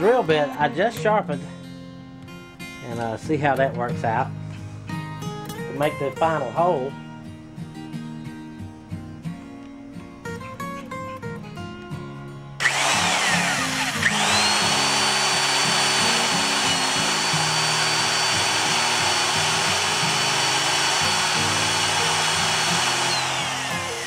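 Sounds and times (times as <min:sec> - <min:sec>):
electric drill whining: 0:12.6 - 0:24.0.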